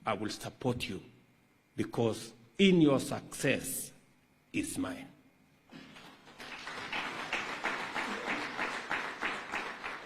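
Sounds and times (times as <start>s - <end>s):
audience applauding: 5.9s - 10.0s.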